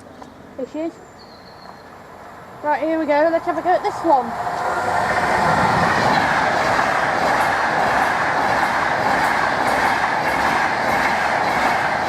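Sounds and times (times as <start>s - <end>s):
train wheels rushing on rail: 2.5s - 12.0s
wheels clicking over rail joints: 2.8s - 12.0s.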